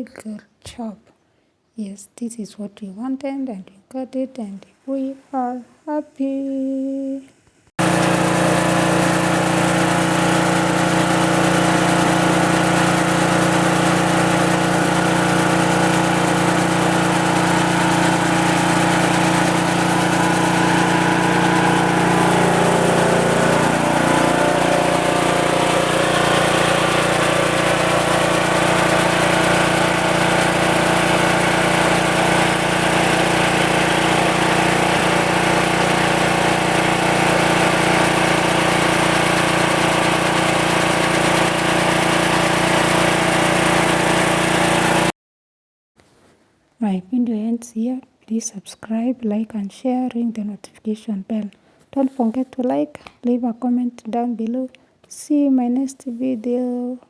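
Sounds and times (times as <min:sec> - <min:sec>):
chaff cutter motor running: 0:07.8 - 0:45.1.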